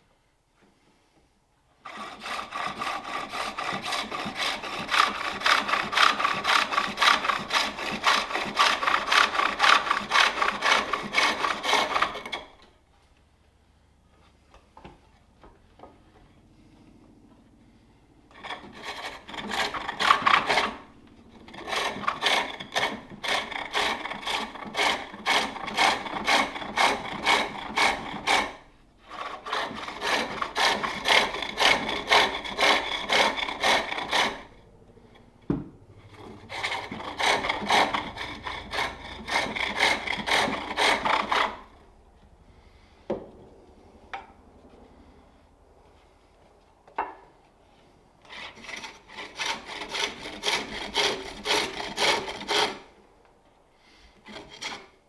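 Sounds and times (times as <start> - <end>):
lathe tool rasping wood: 1.9 - 12.6, 18.3 - 35.2, 36.1 - 41.8, 48.3 - 52.9.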